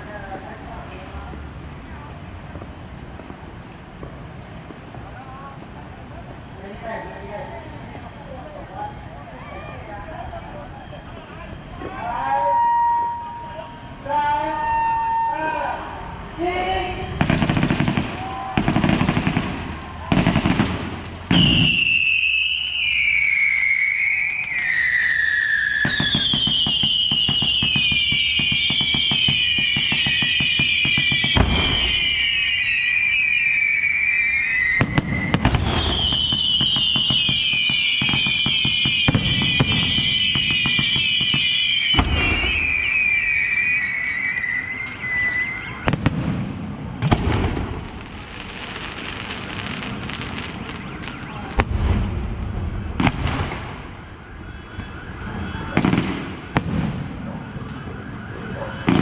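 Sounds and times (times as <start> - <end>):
firework whistles sliding downward: 11.8 - 13.7, 17.3 - 46.0, 47.7 - 56.6
firework crackling: 17.0 - 54.4
firework booms: 17.1 - 22.1, 25.8 - 32.7, 34.8 - 43.4, 45.8 - 57.4, 58.8 - 59.0.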